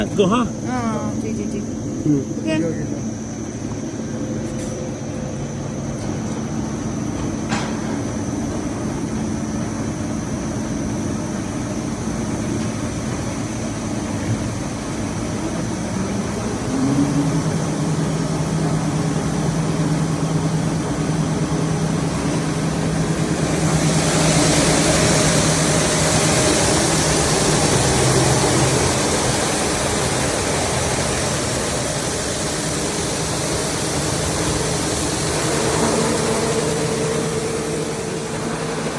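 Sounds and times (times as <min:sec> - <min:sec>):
higher machine hum: 0:00.0 - 0:38.9
machinery motor hum: 0:00.0 - 0:38.9.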